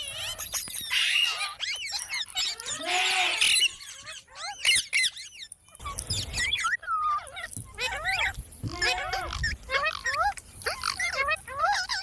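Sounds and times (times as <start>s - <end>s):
parrot chirps and whistles: 0.0s - 2.8s, 3.4s - 12.0s
parrot squawk: 0.0s - 12.0s.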